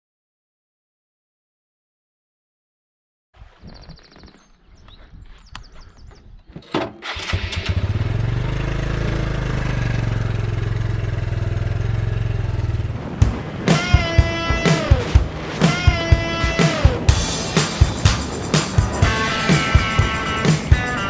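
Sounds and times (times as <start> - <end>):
motorcycle engine starting and idling: 6.6 - 21.0.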